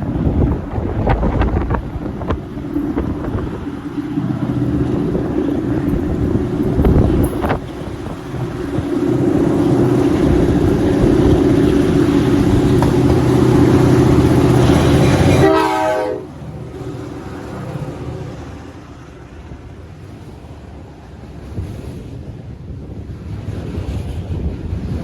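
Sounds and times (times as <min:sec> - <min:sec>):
passing train rumble: 0:00.0 - 0:25.0
wind noise on microphone: 0:00.0 - 0:25.0
locomotive air horn blast: 0:14.9 - 0:16.4.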